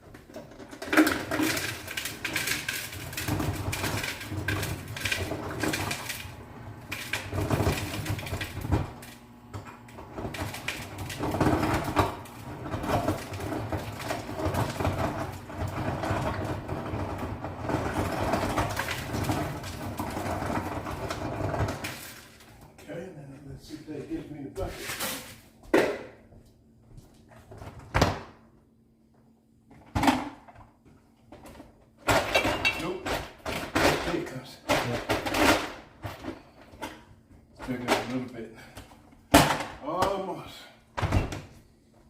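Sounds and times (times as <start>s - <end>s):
ice clattering in freezer: 0.0s - 9.2s, 9.9s - 22.6s, 24.6s - 25.5s, 31.4s - 37.0s, 37.6s - 38.3s.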